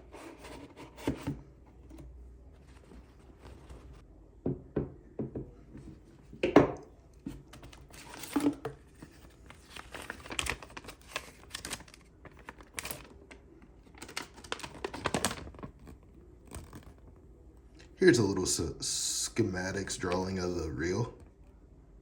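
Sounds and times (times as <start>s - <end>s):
packaging crinkling and tearing: 7.5s - 17.1s.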